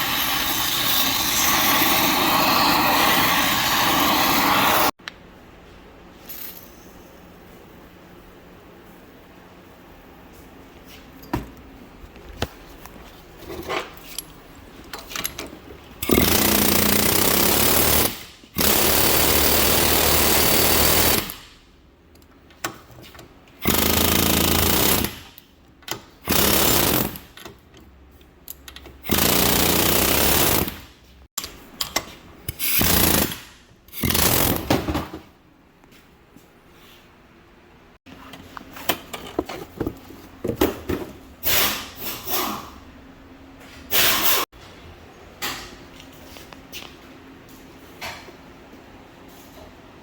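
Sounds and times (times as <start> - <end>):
pneumatic air hammer bursts: 0.0 - 4.9, 16.0 - 21.6, 23.6 - 25.4, 26.2 - 27.4, 29.0 - 30.9, 32.5 - 34.7, 41.4 - 42.7, 43.9 - 44.4.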